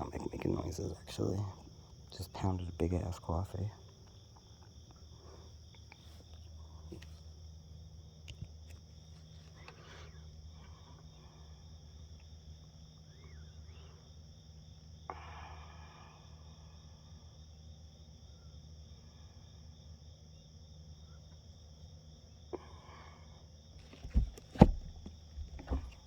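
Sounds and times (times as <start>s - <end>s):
crickets trilling: 0.0s - 26.0s
brief rustle: 23.8s - 26.0s.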